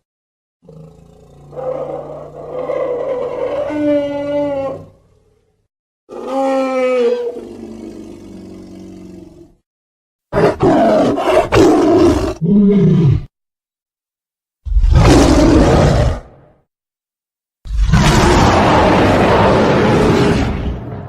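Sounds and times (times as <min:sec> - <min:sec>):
bellowing dinosaur call: 0:00.6 - 0:05.5, 0:06.1 - 0:09.3
harsh dinosaur roar: 0:00.6 - 0:09.5, 0:10.4 - 0:13.3, 0:14.7 - 0:16.5, 0:17.7 - 0:21.0.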